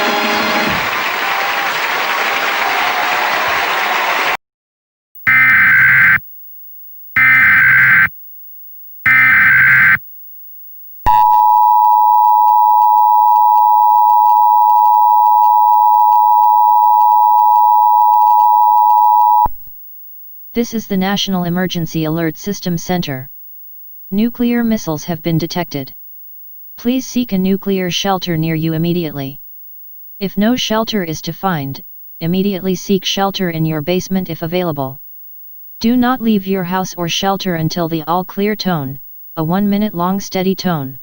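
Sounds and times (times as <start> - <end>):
digital data squawk: 7.2 - 8.1, 9.1 - 10.0
two-tone alert signal: 9.1 - 10.0, 11.1 - 19.5.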